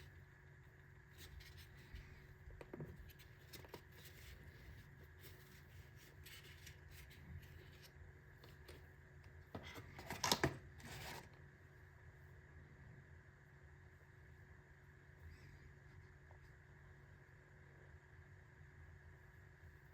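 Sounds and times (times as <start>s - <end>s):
rustling and scraping: 0.8s - 8.8s.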